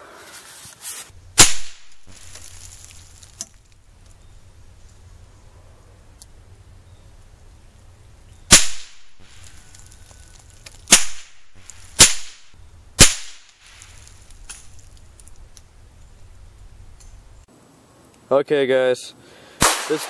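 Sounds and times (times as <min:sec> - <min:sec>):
sharp gunshots: 0:01.4 - 0:02.1, 0:08.5 - 0:09.2, 0:10.9 - 0:13.5, 0:19.6 - 0:20.0.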